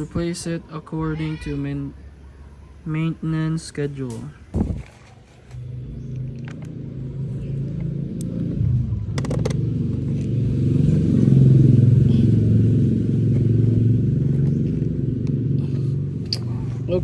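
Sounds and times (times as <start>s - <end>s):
motorcycle engine running: 4.6s - 17.0s.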